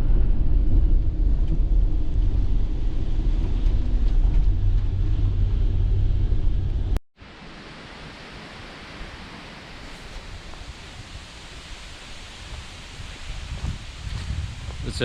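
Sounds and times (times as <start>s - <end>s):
wind buffeting microphone: 8.9s - 15.0s.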